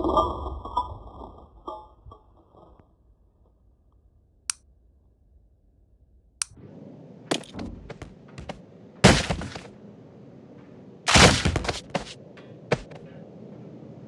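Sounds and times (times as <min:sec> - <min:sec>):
loud crashing impacts: 0:07.3 - 0:09.7, 0:11.1 - 0:13.0
sharp knocks: 0:07.3 - 0:09.7, 0:11.1 - 0:13.0.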